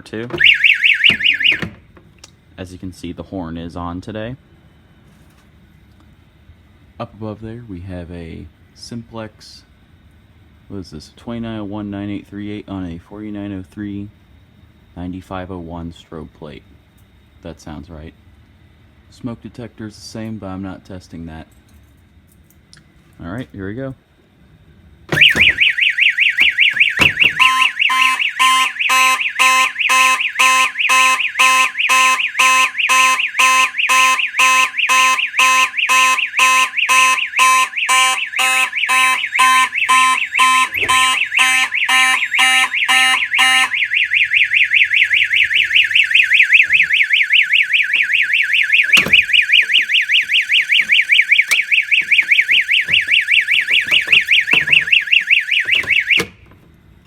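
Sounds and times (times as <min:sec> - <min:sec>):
buzzy pulsing fire alarm horn: 0:00.4 - 0:01.7, 0:25.1 - 0:56.4
high-pitched warbling warning horn: 0:25.1 - 0:56.2.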